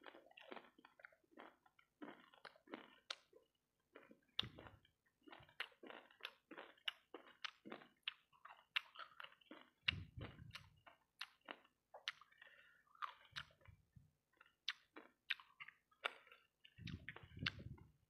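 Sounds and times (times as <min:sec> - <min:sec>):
wet chewing and smacking: 0:00.0 - 0:18.0.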